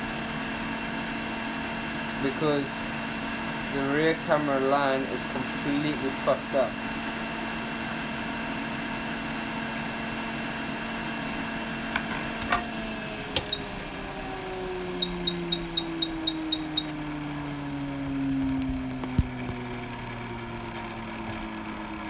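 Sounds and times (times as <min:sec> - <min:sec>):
hot air blower hiss: 0:00.0 - 0:19.4
clicks: 0:12.0 - 0:17.0
short high beeps: 0:15.0 - 0:17.0.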